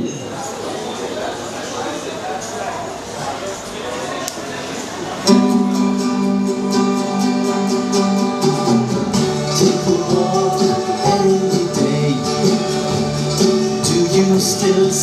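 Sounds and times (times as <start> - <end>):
acoustic guitar strumming: 5.2 - 15.0.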